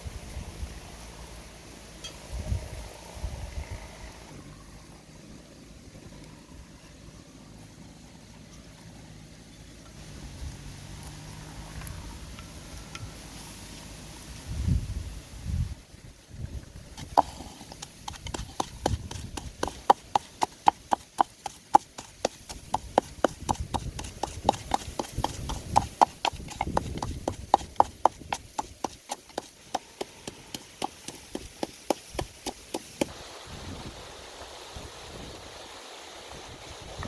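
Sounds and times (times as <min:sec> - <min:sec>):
chopping on wooden board: 0:17.0 - 0:33.1.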